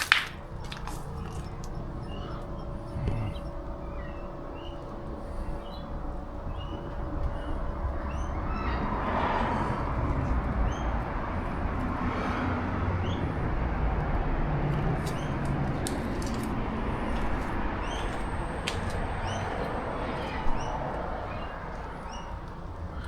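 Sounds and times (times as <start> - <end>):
steady low rumble: 0.0 - 23.0
bird chirps: 0.3 - 11.1, 14.8 - 23.0.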